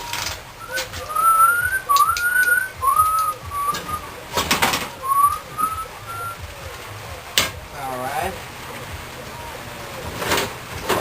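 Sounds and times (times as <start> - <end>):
person whistling a tune: 0.0 - 4.1, 5.0 - 6.5.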